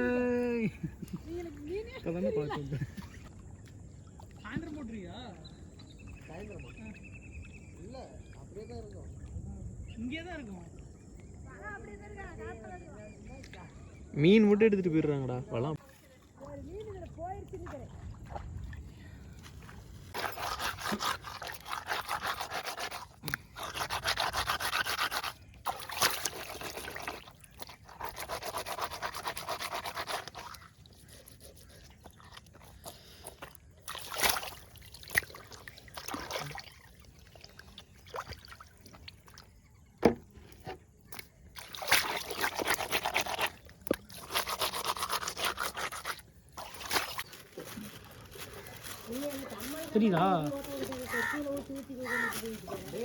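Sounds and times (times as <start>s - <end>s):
rapid scraping strokes: 20.1s - 32.0s, 41.9s - 47.2s.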